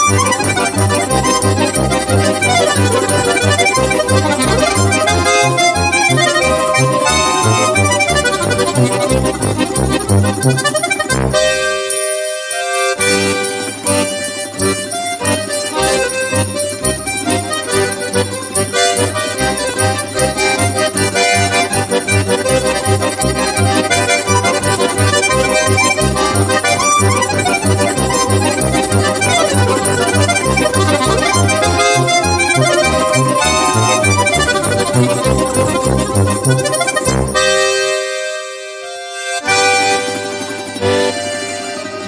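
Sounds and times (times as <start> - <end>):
accordion melody: 0.0 - 42.0.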